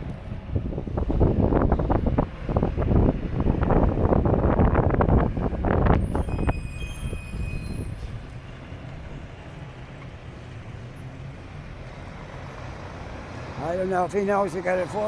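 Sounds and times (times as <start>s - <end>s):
wind buffeting microphone: 0.0s - 10.7s
vehicle engine rumble: 0.0s - 15.0s
brief high squeal: 6.0s - 8.2s.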